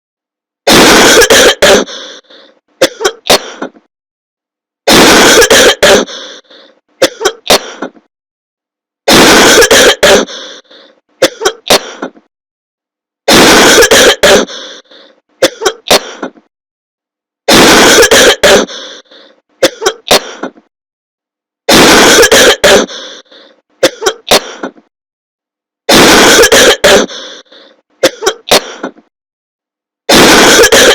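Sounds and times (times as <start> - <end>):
person coughing: 0.7 - 2.2, 2.8 - 3.8, 4.9 - 6.4, 7.0 - 8.1, 9.1 - 10.6, 11.2 - 12.3, 13.3 - 16.5, 17.5 - 20.7, 21.7 - 24.9, 25.9 - 29.1, 30.1 - 30.9.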